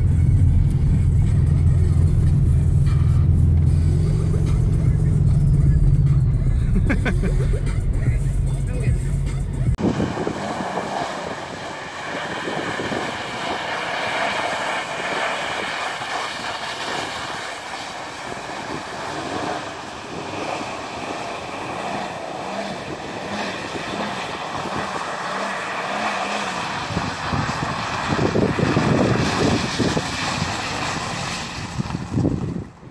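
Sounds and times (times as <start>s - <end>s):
car engine revving: 0.0s - 32.6s
steady rushing noise: 9.7s - 25.9s.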